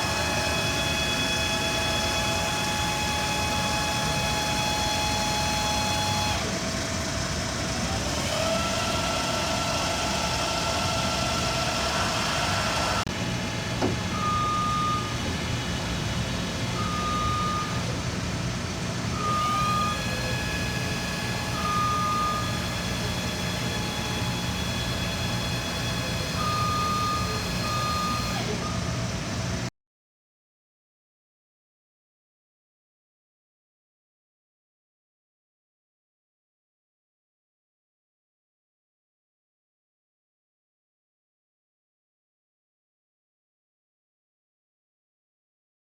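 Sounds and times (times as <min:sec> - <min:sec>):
machine drive whine: 0:00.0 - 0:29.7.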